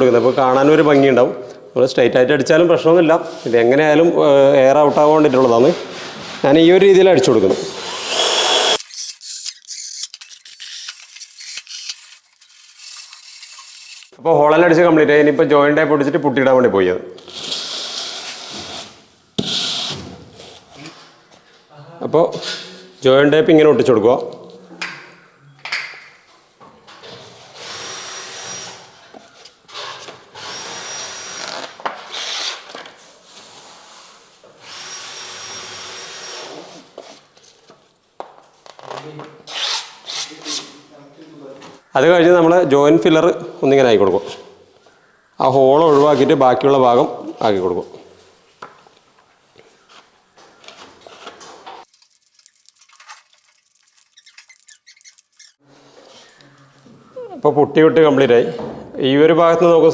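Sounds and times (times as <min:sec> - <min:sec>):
tape scraping on board: 0:08.8 - 0:14.2, 0:50.7 - 0:55.6.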